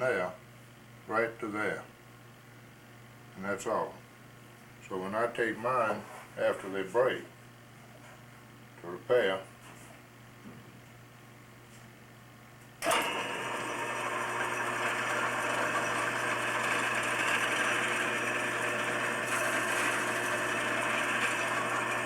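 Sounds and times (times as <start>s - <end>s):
electric drill drilling: 12.8s - 22.0s.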